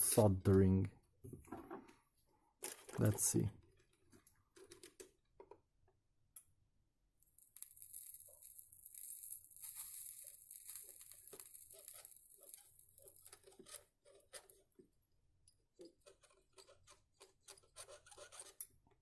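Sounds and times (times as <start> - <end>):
solder paste sizzling and crackling: 9.5 - 15.0.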